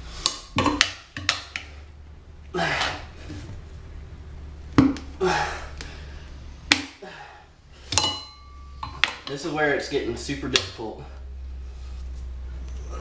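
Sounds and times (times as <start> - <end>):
person grunting with effort: 2.5 - 3.2, 5.2 - 5.8.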